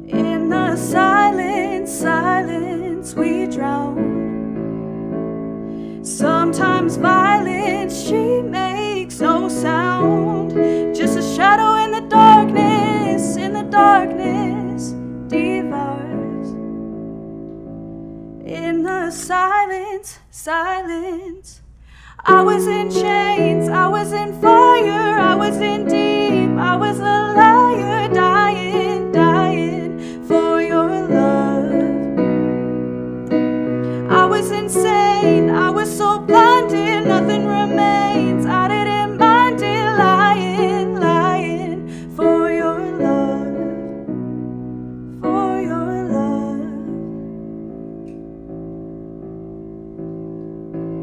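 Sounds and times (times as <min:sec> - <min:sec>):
woman singing with vibrato: 0:00.0 - 0:04.4, 0:06.0 - 0:16.6, 0:18.4 - 0:32.2, 0:33.8 - 0:43.8, 0:45.2 - 0:47.2
held chords accompaniment: 0:00.0 - 0:19.5, 0:22.2 - 0:51.0.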